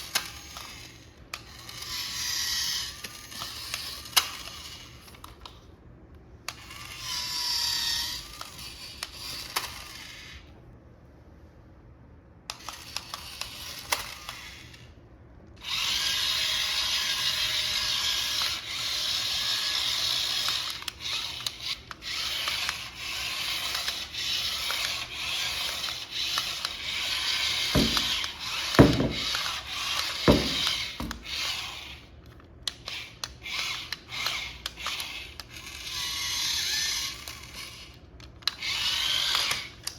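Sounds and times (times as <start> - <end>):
toy car motor whirring: 0.0 - 5.6, 6.5 - 10.5, 12.5 - 15.0, 15.6 - 39.9
sharp knocks: 27.8 - 29.4, 30.3 - 31.2.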